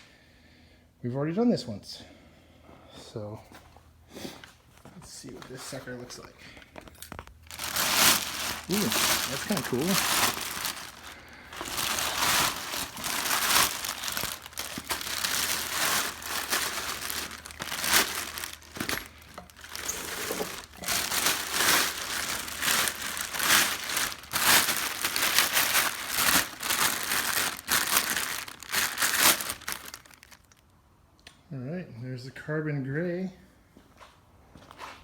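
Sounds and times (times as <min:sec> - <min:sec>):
plastic packaging crinkling: 0:05.9 - 0:30.7.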